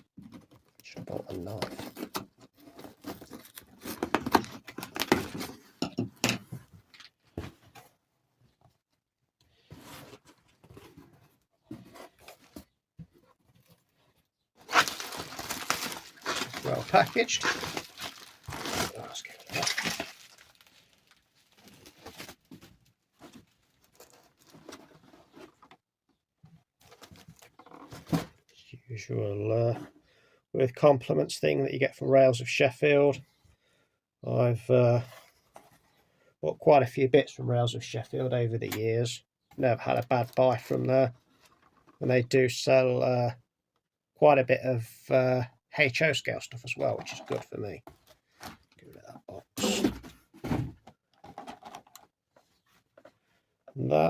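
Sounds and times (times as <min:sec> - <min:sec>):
packaging rustling and knocking: 0:01.5 - 0:07.7, 0:14.6 - 0:25.6
cardboard box being torn open: 0:14.6 - 0:20.6.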